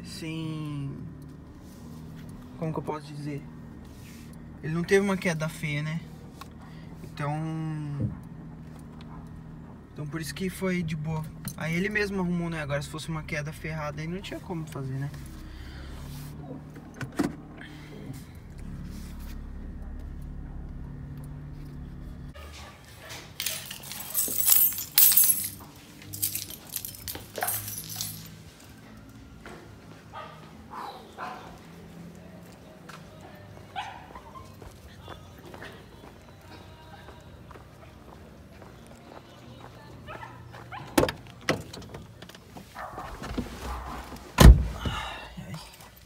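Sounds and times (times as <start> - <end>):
low engine hum: 0.0 - 22.5
shuffling and handling noise: 22.4 - 28.8
metallic clinks and clattering: 23.3 - 28.7
door slamming: 44.4 - 45.0.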